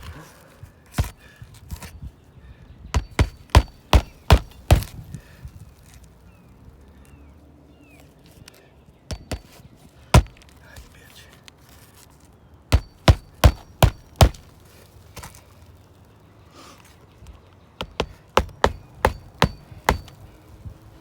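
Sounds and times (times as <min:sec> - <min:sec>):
hammer striking roof shingles: 0:00.9 - 0:01.9, 0:03.0 - 0:05.1, 0:09.1 - 0:09.6, 0:10.2 - 0:10.5, 0:12.7 - 0:14.6, 0:17.8 - 0:20.3.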